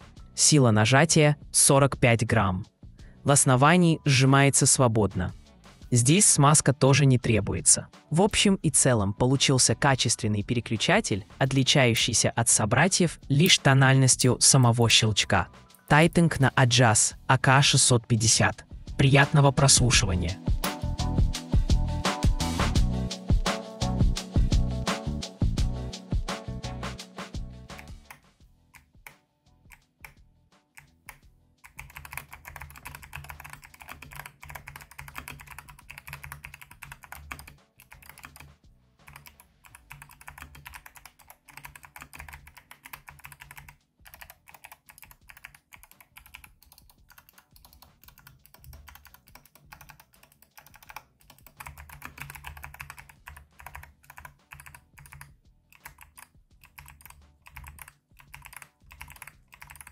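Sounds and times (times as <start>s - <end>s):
clicky mechanical keyboard typing: 30.8s - 38.5s, 39.1s - 59.9s.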